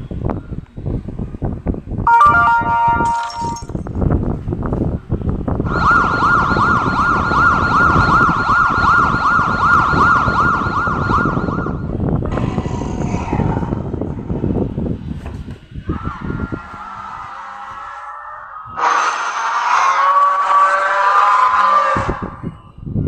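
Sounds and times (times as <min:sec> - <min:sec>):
electronic siren warbling: 0:02.1 - 0:03.6, 0:05.6 - 0:12.5, 0:15.9 - 0:22.7
electronic alert tones: 0:02.1 - 0:03.7
rumbling and crackling noise: 0:03.3 - 0:23.0.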